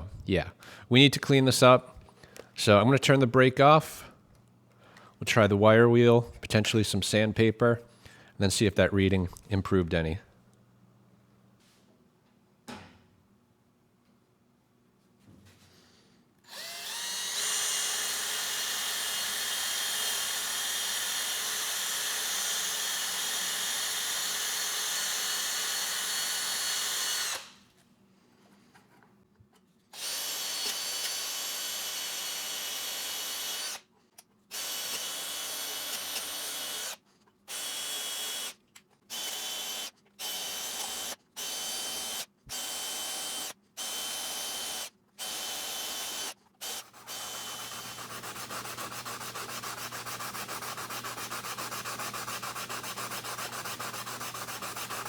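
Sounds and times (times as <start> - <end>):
power tool spinning wire wheel: 16.5 - 27.6, 30.0 - 33.8, 34.5 - 55.0.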